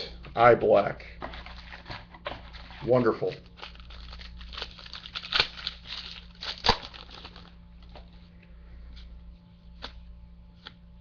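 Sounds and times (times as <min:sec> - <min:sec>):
wrapper crinkling and tearing: 0:02.4 - 0:07.6.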